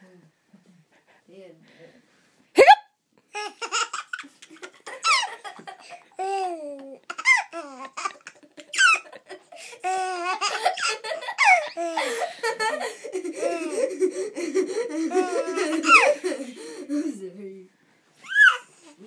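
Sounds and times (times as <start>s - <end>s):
child hiccuping: 2.6s - 2.9s
child giggling: 3.4s - 17.4s.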